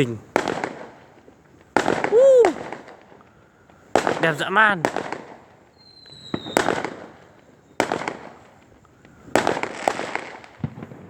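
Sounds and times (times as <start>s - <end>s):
firework bangs: 0.0s - 3.2s, 3.8s - 11.0s
crackling firework bangs: 0.0s - 11.0s
firework whistle: 1.8s - 2.9s, 5.7s - 8.1s.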